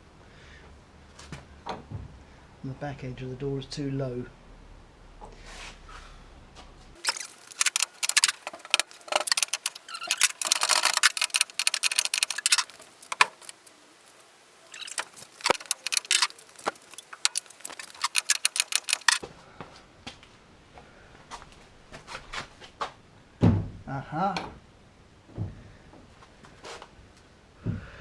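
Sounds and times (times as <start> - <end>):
ratchet wrench clicking: 7.0 - 13.7, 14.7 - 19.2
metal rattling: 7.0 - 19.2.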